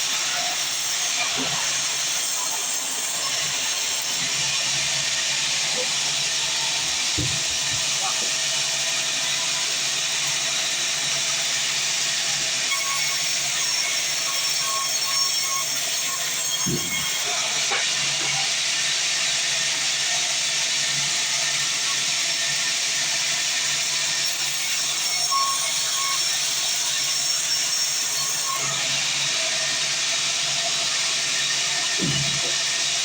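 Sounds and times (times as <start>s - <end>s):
band sawmill running: 0.0s - 33.0s.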